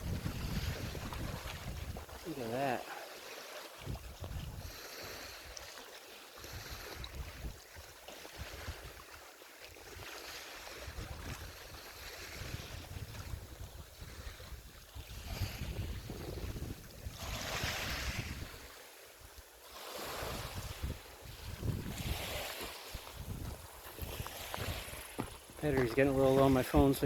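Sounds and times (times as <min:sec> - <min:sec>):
wind buffeting microphone: 0:00.0 - 0:02.3, 0:03.8 - 0:04.8, 0:06.5 - 0:07.6, 0:10.8 - 0:18.7, 0:20.2 - 0:27.0.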